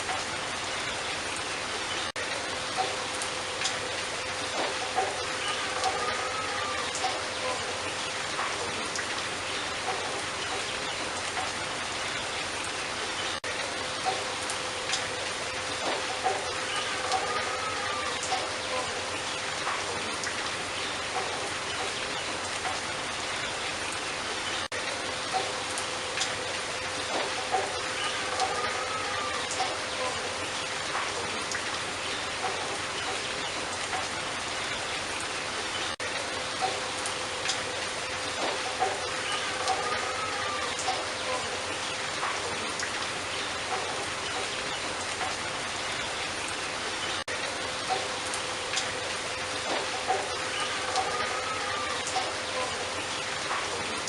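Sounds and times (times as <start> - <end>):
steady rain falling: 0.0 - 54.0
water dripping: 0.0 - 54.0.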